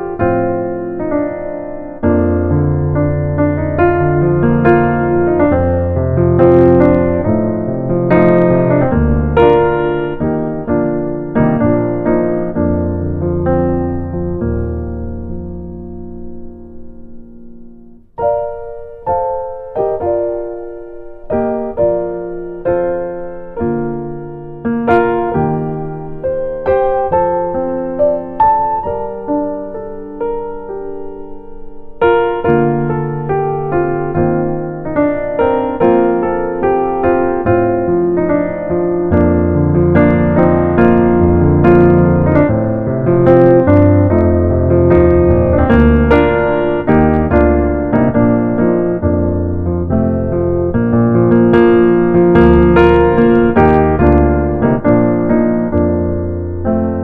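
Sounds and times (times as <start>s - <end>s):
piano-like keyboard music: 0.0s - 57.0s
steady bass line: 37.4s - 57.0s.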